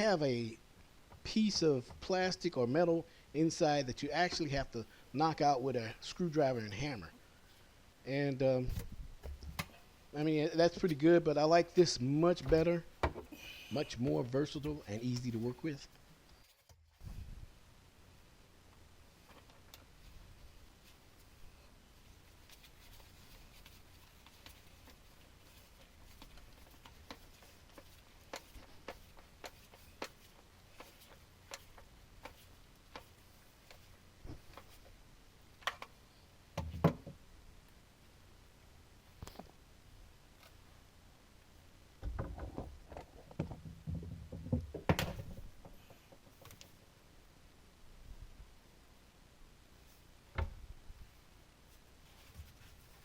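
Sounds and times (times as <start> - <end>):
hands and tools handling noises: 11.8 - 17.0, 19.2 - 35.0.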